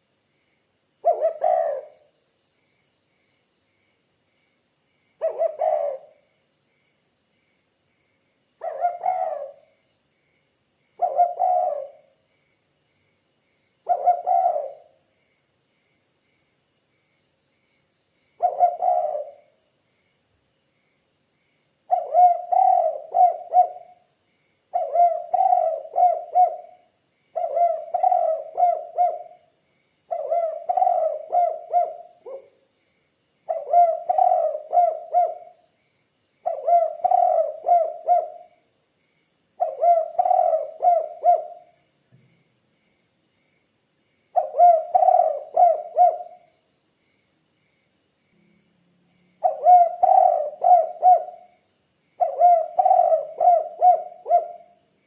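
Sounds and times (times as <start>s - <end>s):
dove cooing: 1.0s - 2.1s, 5.2s - 6.2s, 8.6s - 9.7s, 11.0s - 12.1s, 13.9s - 15.0s, 18.4s - 19.5s, 21.9s - 24.1s, 24.7s - 29.5s, 30.1s - 32.5s, 33.5s - 35.6s, 36.4s - 38.6s, 39.6s - 41.8s, 44.4s - 46.5s, 49.4s - 51.6s, 52.2s - 54.8s.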